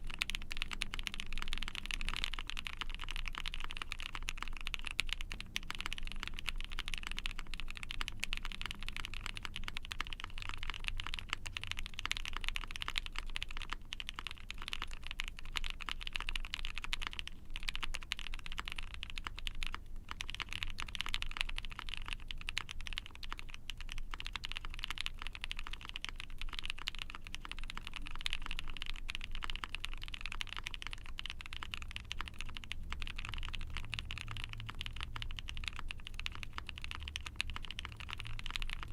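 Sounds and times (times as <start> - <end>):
fast typing on mechanical keyboard: 0.0 - 38.9.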